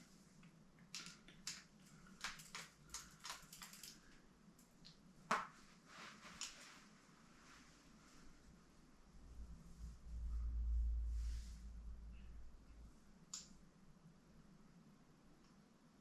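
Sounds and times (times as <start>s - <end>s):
clicks and taps of small parts: 0.8s - 4.0s.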